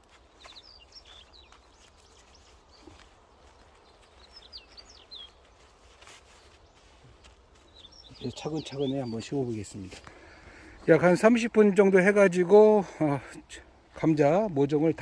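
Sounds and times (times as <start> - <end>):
soft rustle: 0.0 - 10.9
small birds chirping: 0.0 - 14.9.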